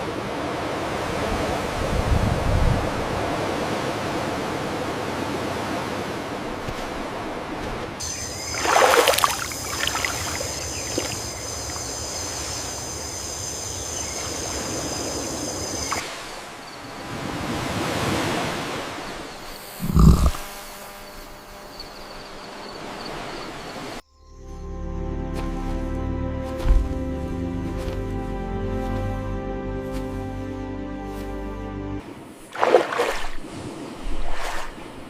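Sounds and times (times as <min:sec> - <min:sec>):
water rushing and splashing: 0:00.0 - 0:12.9, 0:14.2 - 0:20.4, 0:32.1 - 0:35.0
short deep thump: 0:26.6 - 0:27.0.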